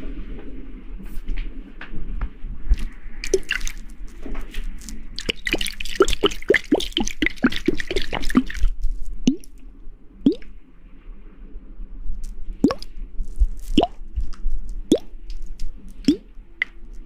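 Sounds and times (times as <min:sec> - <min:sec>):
water drip plinks: 0:03.2 - 0:03.8, 0:05.2 - 0:08.7, 0:09.3 - 0:09.6, 0:10.3 - 0:10.5, 0:12.6 - 0:12.9, 0:16.0 - 0:16.8.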